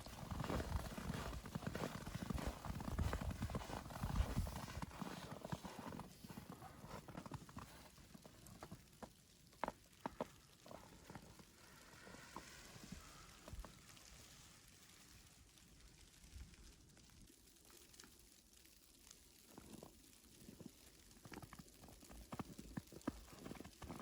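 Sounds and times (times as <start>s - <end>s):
footsteps crunching in snow: 0.0s - 9.0s.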